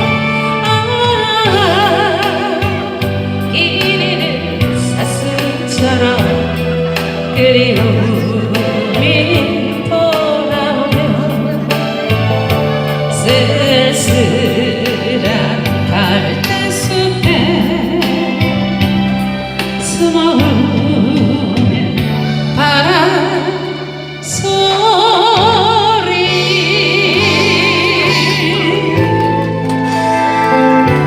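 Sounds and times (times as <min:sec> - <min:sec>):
backing music with beat and bass: 0:00.0 - 0:24.2, 0:26.2 - 0:31.0
person singing with vibrato: 0:19.8 - 0:31.0.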